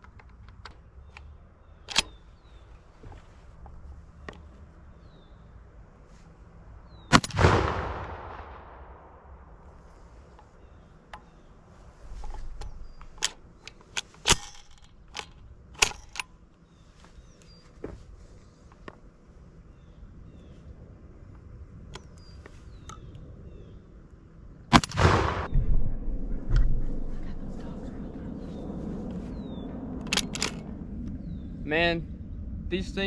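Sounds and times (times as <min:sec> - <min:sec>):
birds chirping faintly: 0:00.0 - 0:07.2, 0:09.7 - 0:24.7, 0:31.0 - 0:33.0
gun clicks and clacks: 0:01.9 - 0:02.2, 0:12.2 - 0:16.6, 0:30.0 - 0:30.7
shotgun shot echoing: 0:07.1 - 0:09.2, 0:24.7 - 0:27.0.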